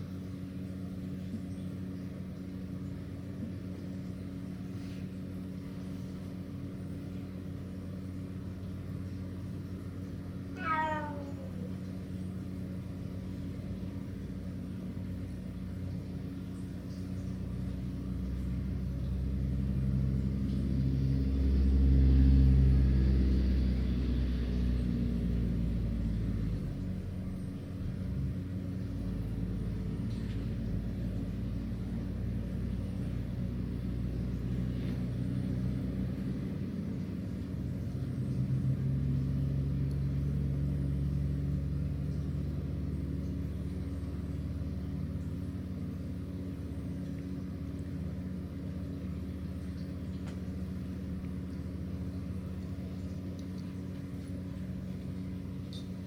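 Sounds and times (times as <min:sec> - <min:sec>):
steady low hum: 0:00.0 - 0:56.0
cat meowing: 0:10.5 - 0:11.8.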